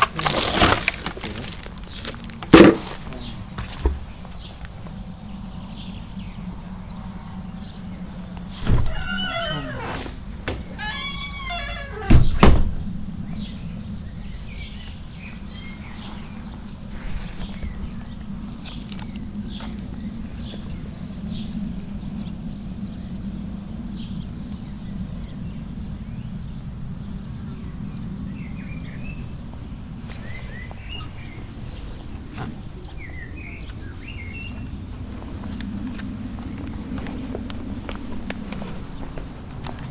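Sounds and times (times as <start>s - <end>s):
loud thump: 2.5s - 3.0s
drawn-out call: 8.9s - 10.0s
low rumble: 11.5s - 39.9s.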